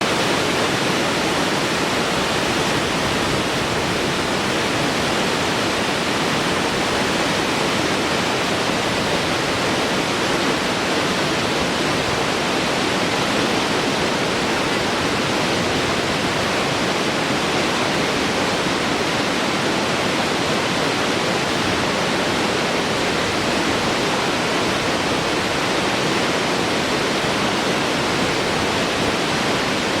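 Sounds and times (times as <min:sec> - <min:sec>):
waterfall rushing: 0:00.0 - 0:30.0.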